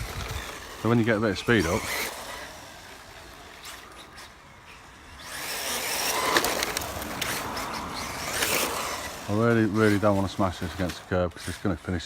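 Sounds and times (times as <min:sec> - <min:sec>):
rc car motor and tyres whirring: 0:00.0 - 0:12.0.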